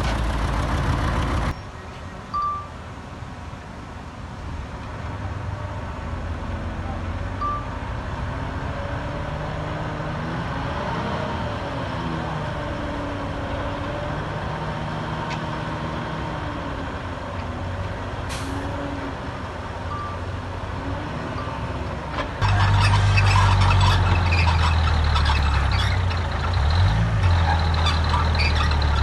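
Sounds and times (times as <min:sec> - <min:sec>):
heavy diesel engine revving: 0:20.7 - 0:29.0.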